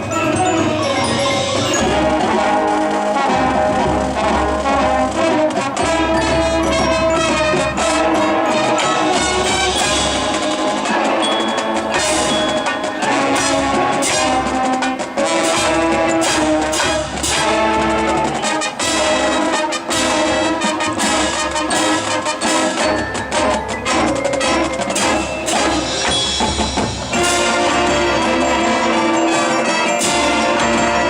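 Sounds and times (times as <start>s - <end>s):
percussion hits: 0.0s - 31.0s
brass section sustained chords: 1.4s - 11.3s, 11.9s - 22.8s, 27.1s - 31.0s.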